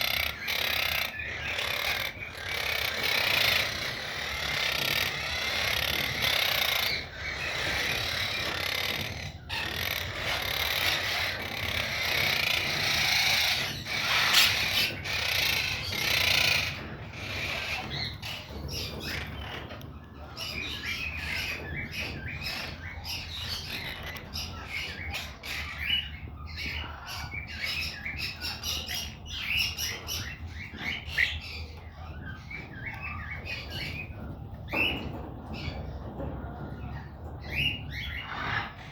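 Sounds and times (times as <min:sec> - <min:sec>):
parakeet chattering: 0:00.0 - 0:19.5.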